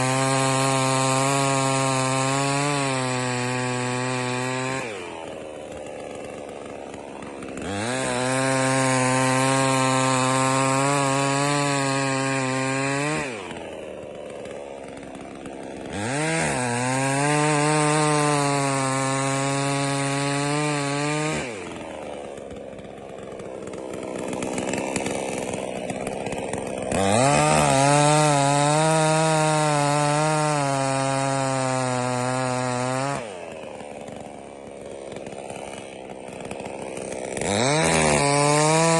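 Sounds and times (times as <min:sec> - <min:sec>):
chainsaw idling and revving: 0:00.0 - 0:38.9.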